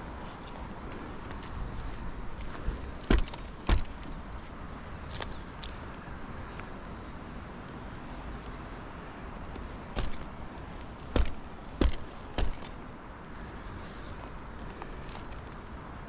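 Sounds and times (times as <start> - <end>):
outdoor background noise: 0.0 - 16.0
sharp knocks: 3.0 - 4.0, 10.0 - 10.4, 11.1 - 12.8.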